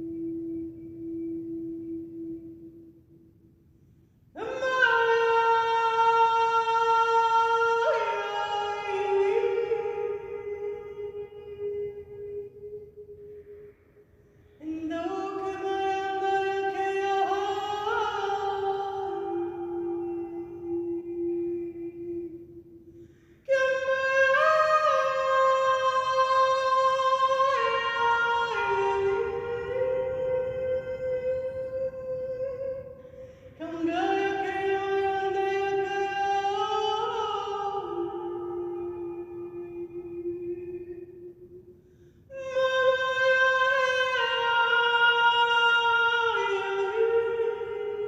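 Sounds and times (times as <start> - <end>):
low steady tone: 0.0 - 5.1
woman singing a chant: 4.4 - 12.8, 14.6 - 22.4, 23.5 - 33.0, 33.6 - 41.1, 42.3 - 48.0.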